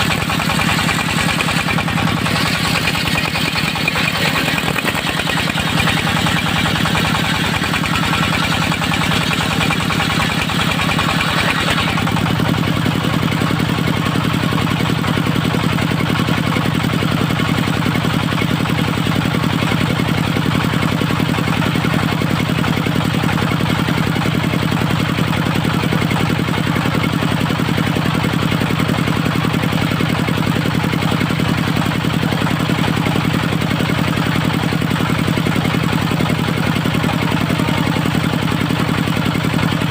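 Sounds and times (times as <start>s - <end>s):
saw blade cutting wood: 0.0s - 12.4s
sawmill engine running: 0.0s - 39.9s.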